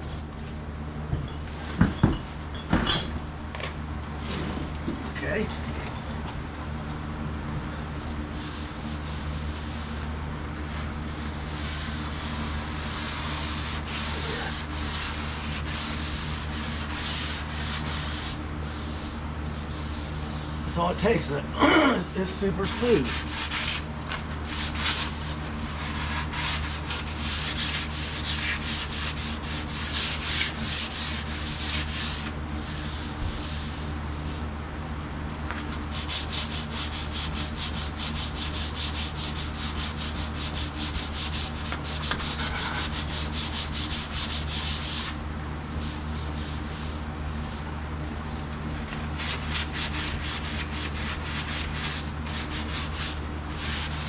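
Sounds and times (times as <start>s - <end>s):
steady low hum: 0.0s - 54.0s
sandpaper rubbing on metal panel: 8.3s - 10.1s, 11.0s - 21.4s, 22.6s - 34.5s, 35.9s - 47.6s, 49.2s - 54.0s.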